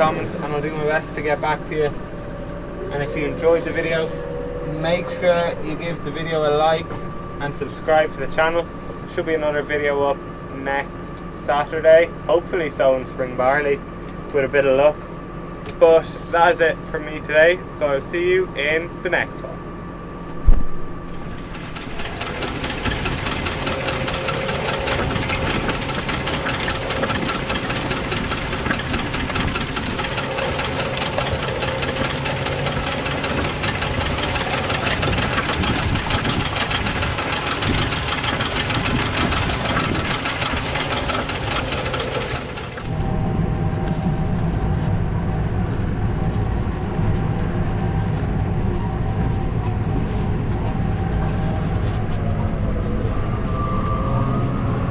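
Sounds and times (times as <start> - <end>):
tractor diesel engine running: 0.0 - 53.5.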